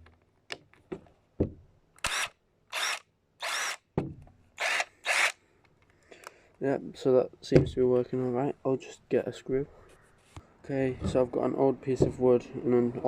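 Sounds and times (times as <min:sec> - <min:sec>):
impact driver motor whining: 0:02.1 - 0:03.8, 0:04.6 - 0:05.4.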